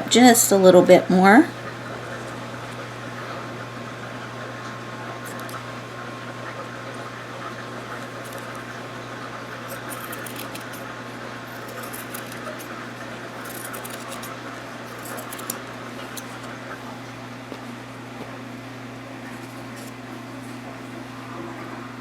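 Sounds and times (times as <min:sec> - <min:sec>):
scissors snipping fabric: 0:08.1 - 0:08.7, 0:09.6 - 0:10.9, 0:11.5 - 0:12.8, 0:13.4 - 0:16.5.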